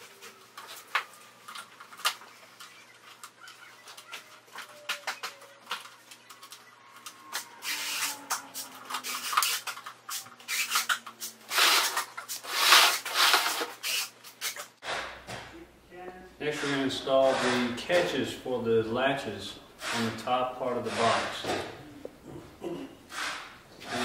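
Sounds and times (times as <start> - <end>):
screwdriver clicks and squeaks: 1.5 - 11.4
screw rubbing rasps: 7.6 - 14.7.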